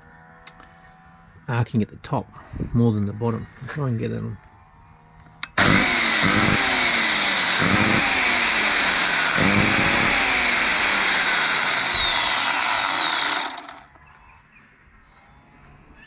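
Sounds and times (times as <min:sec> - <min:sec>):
electric chainsaw motor running: 0:05.5 - 0:14.0.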